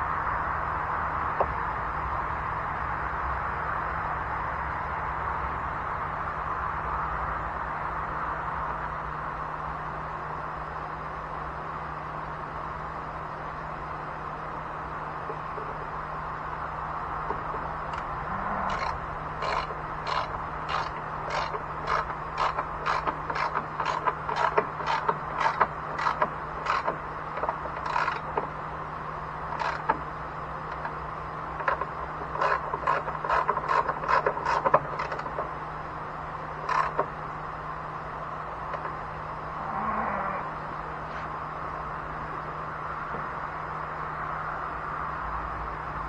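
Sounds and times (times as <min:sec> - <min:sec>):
steady low hum: 0:00.0 - 0:46.0
ratchet wrench clicking: 0:18.7 - 0:28.5.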